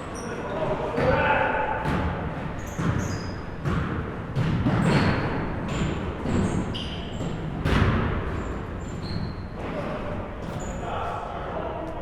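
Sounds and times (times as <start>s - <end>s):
shoe squeaks: 0.0s - 0.6s, 2.6s - 3.6s, 4.8s - 7.4s, 8.4s - 10.9s
basketball bouncing on gym floor: 1.0s - 9.4s.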